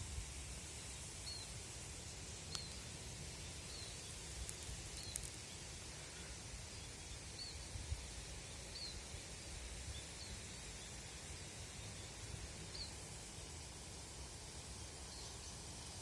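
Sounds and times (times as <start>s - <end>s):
wind with low rumble and hiss: 0.0s - 16.0s
small bird chirping: 2.4s - 5.7s.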